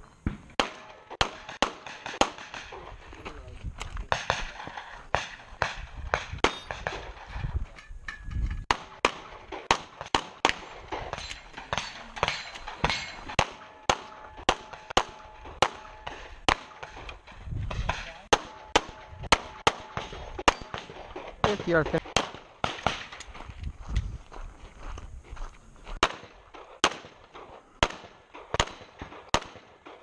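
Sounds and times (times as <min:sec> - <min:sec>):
rapid pistol fire: 0:00.5 - 0:03.0, 0:08.7 - 0:23.2, 0:26.0 - 0:30.0.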